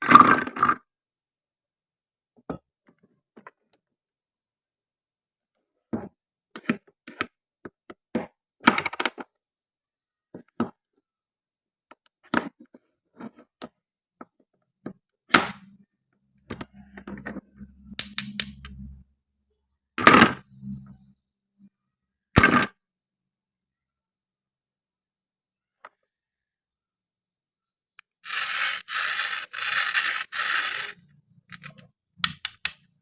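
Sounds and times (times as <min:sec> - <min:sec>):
wooden and plastic toy pieces clicking: 0:17.9 - 0:18.8, 0:28.0 - 0:33.0
scraping rips: 0:28.2 - 0:31.8.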